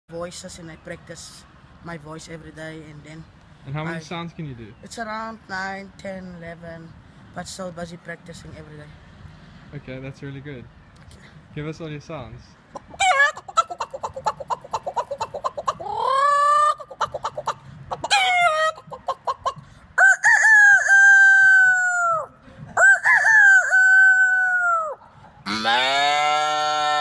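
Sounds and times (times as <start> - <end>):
person imitating chicken clucking: 12.8 - 19.6, 20.2 - 27.0
rooster crow imitation: 13.0 - 13.6, 20.0 - 27.0.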